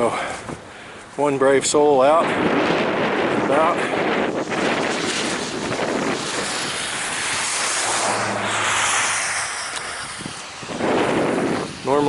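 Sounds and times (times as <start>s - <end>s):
wind noise: 0.0s - 12.0s
passing vehicle hum: 4.4s - 11.9s
tyre hiss on wet road: 4.4s - 12.0s.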